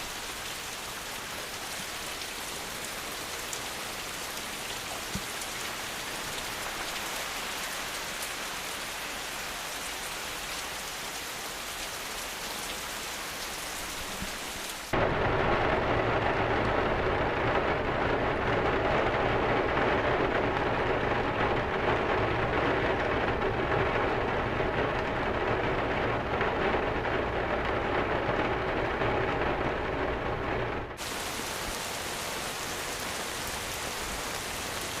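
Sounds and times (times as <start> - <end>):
heavy downpour: 0.0 - 35.0
steady rain falling: 0.0 - 35.0
low thunder rumble: 15.0 - 31.9.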